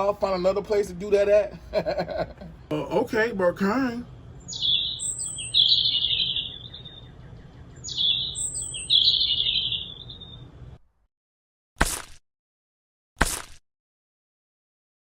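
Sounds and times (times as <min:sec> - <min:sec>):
bird chirping and trilling: 0:04.3 - 0:10.7.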